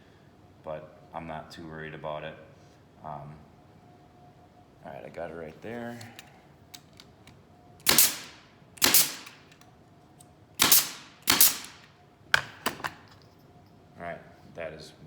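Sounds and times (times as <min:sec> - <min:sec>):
nail gun shots: 0:07.8 - 0:09.5, 0:10.6 - 0:12.8.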